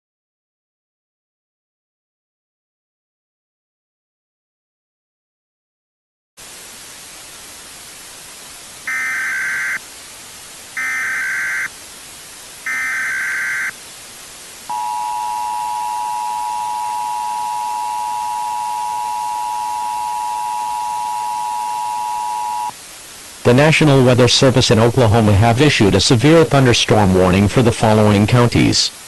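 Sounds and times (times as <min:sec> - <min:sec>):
static hiss: 0:06.4 - 0:29.0
two-tone attention signal drone: 0:08.9 - 0:09.8, 0:10.8 - 0:11.7, 0:12.7 - 0:13.8, 0:14.7 - 0:22.7
warbling data burst screech: 0:08.9 - 0:09.8, 0:10.8 - 0:11.7, 0:12.7 - 0:13.8.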